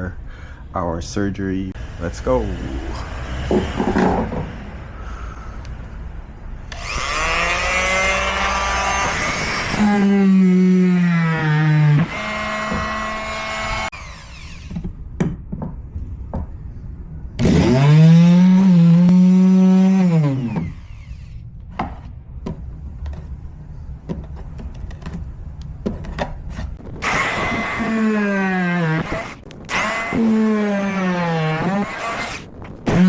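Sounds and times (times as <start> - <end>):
power tool motor running: 6.7 - 14.8, 17.4 - 21.4, 27.0 - 33.0.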